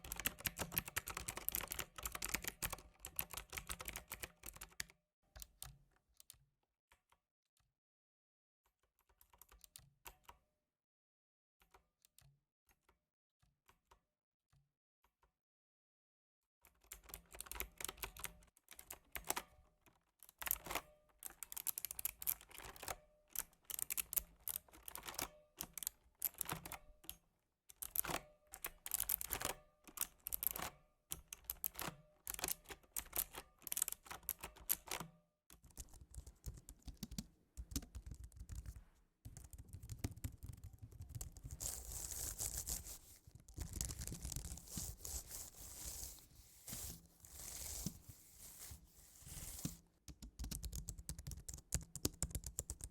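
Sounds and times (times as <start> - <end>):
typing on computer keyboard: 0.0 - 6.4, 16.9 - 19.5, 20.3 - 46.1, 49.6 - 52.9.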